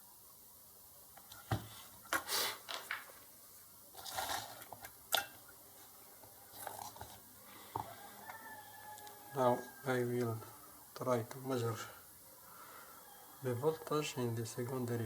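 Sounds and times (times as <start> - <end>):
short scrapes and rustles: 3.9 - 4.8.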